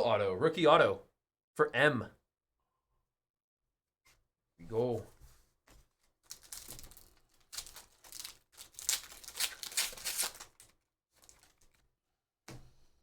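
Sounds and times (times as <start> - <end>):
foil wrapper tearing and crinkling: 6.2 - 11.8.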